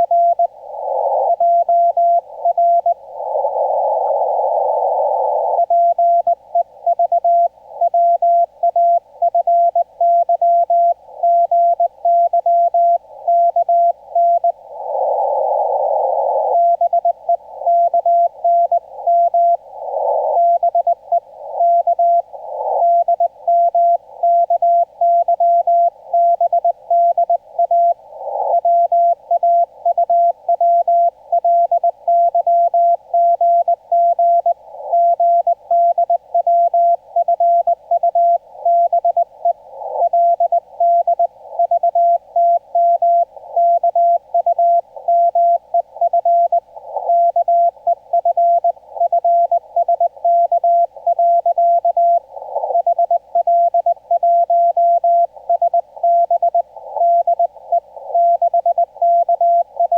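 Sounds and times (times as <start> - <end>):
receiver hiss: 0.0 - 59.9
morse code tone: 40.0 - 59.9.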